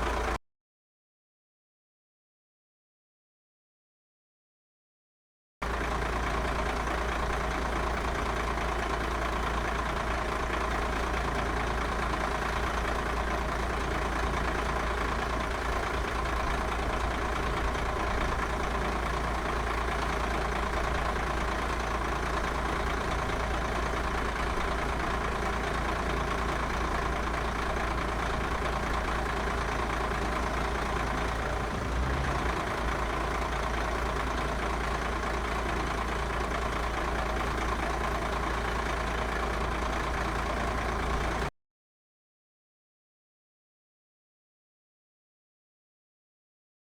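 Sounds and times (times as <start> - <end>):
bus diesel engine running: 0.0 - 0.4, 5.6 - 41.5.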